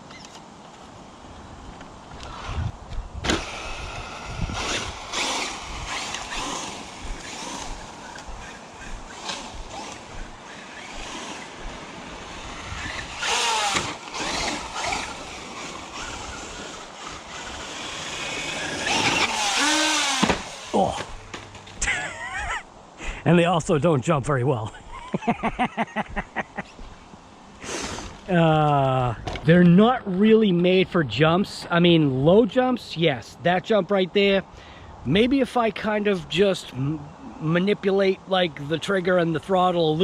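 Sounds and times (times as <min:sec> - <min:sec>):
tyres on dirt: 0:00.0 - 0:22.3, 0:24.8 - 0:30.8
electric motor whining: 0:02.1 - 0:21.4, 0:27.6 - 0:28.3.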